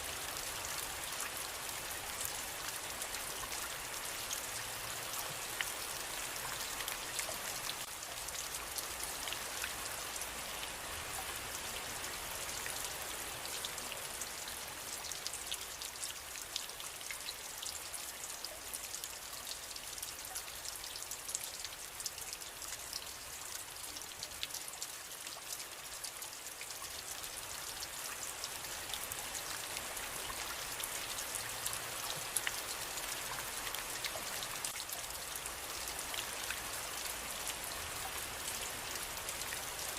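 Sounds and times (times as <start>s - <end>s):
rain drops pattering: 0.0s - 39.9s.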